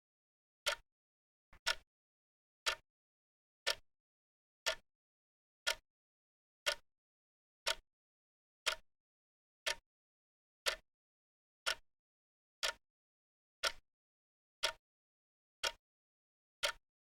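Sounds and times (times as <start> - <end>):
clock ticking: 0.6 - 0.8, 1.6 - 1.8, 4.6 - 4.8, 8.6 - 8.8, 10.6 - 10.8, 11.6 - 11.8.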